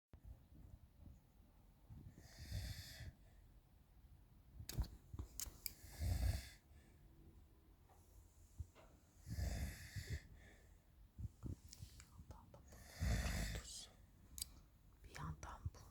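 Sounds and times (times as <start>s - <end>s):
person snoring: 12.8s - 13.8s.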